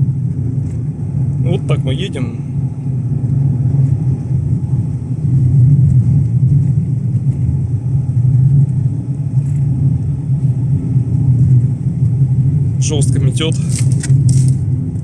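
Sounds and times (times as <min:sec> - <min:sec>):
car engine rumble from inside: 0:00.0 - 0:15.0
studded tyre road noise: 0:00.0 - 0:15.0.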